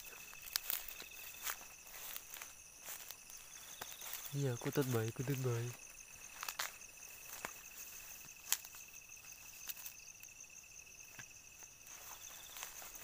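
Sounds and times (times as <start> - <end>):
crickets chirring: 0.0 - 13.0.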